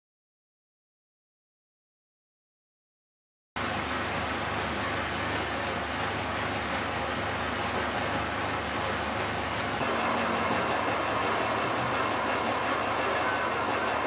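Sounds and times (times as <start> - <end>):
milling machine whining: 3.6 - 14.0.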